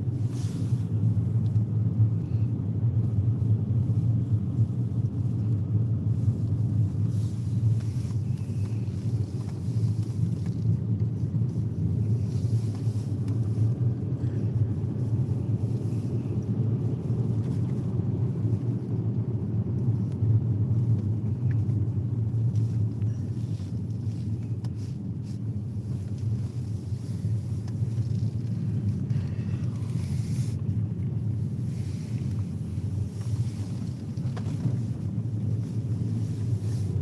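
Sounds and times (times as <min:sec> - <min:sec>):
car tyre and road rumble: 0:00.0 - 0:37.0.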